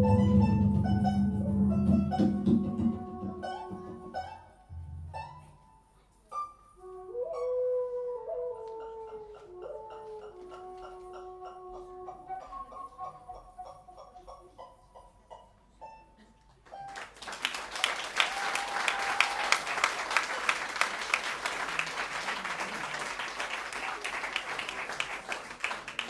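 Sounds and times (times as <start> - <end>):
music: 0.0 - 17.1
audience applause: 16.7 - 26.0
audience cheering: 16.9 - 26.0.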